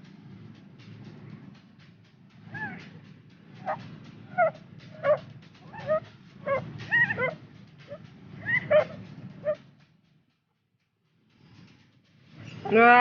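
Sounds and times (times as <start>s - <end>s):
dog whining and yipping: 4.4s - 9.6s.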